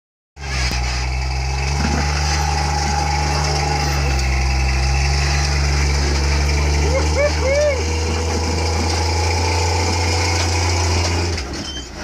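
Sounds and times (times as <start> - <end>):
car engine idling: 0.8 - 11.5.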